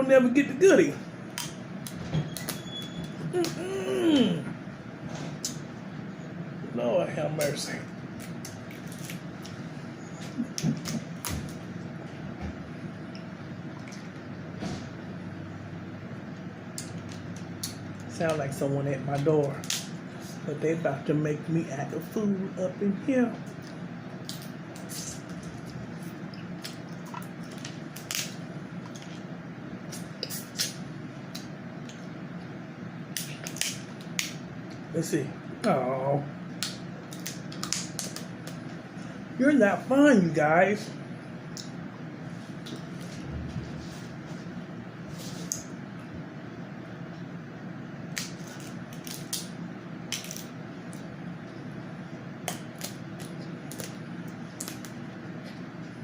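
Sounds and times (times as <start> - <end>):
steady low hum: 0.0 - 56.0
wet chewing and smacking: 23.4 - 32.5
crab shells cracking: 36.6 - 38.6, 48.1 - 49.5, 50.1 - 51.0, 52.4 - 55.0
shells cracking and clicking: 50.1 - 50.5.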